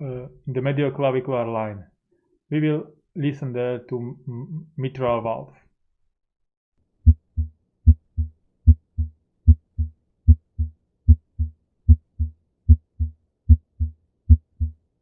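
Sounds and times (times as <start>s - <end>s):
heartbeat through stethoscope: 7.1s - 14.8s.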